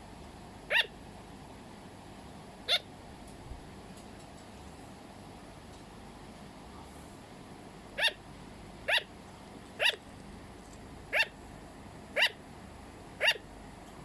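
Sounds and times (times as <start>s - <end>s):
sugar glider barking: 0.7s - 1.0s, 2.6s - 2.9s, 7.9s - 9.2s, 9.8s - 10.1s, 11.1s - 11.4s, 12.1s - 12.5s, 13.2s - 13.5s.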